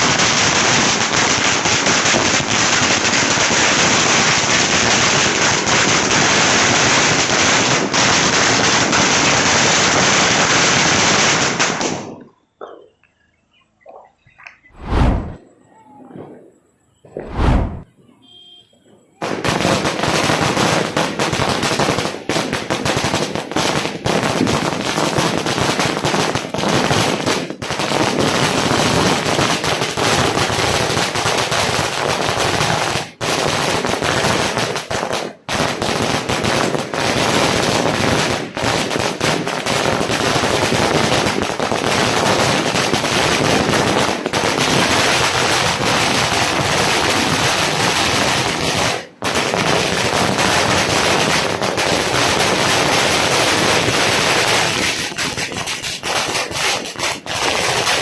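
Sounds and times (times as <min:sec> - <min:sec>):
firecracker bang: 0:17.1 - 0:17.9.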